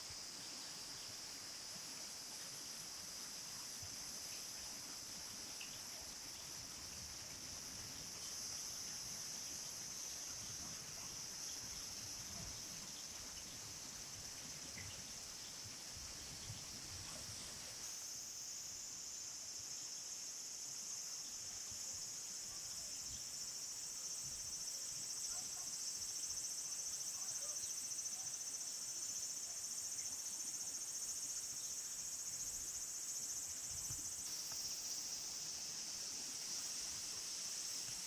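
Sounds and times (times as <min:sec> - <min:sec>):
insects chirping: 0:00.0 - 0:38.0.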